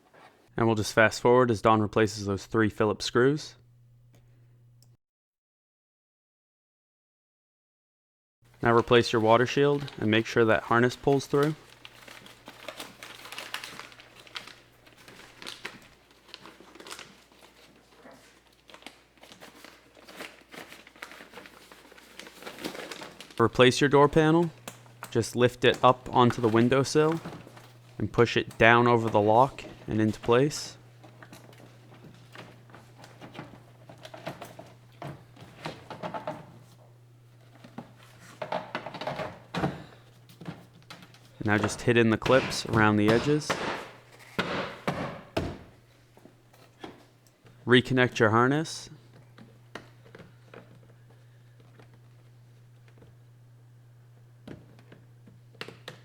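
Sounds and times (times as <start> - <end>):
plastic sheet crinkling: 8.6 - 44.4.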